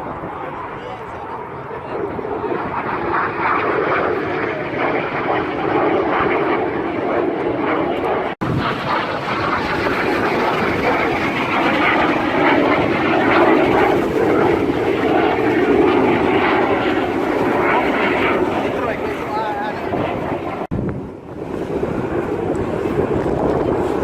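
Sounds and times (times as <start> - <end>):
aircraft engines flying over: 0.0 - 24.0.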